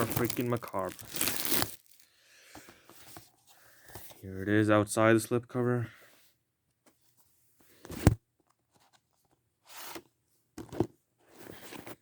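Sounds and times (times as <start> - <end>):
packaging rustling and sliding: 0.0 - 2.1.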